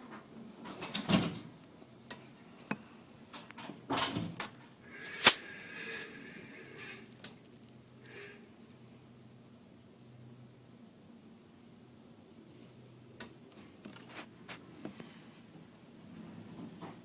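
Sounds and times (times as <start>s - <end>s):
soft hiss: 4.3s - 9.7s.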